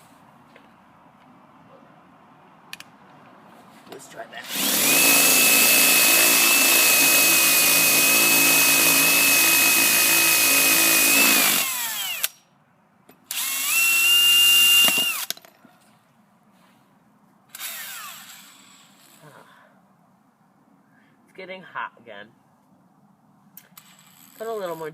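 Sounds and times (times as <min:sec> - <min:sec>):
electric drill boring into metal: 0:04.5 - 0:12.4, 0:13.3 - 0:15.3, 0:17.6 - 0:19.2.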